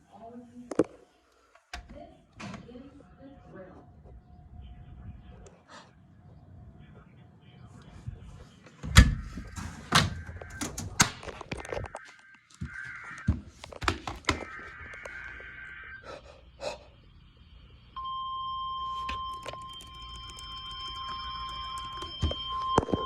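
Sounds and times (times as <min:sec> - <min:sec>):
steady warning alarm tone: 0:08.0 - 0:23.0.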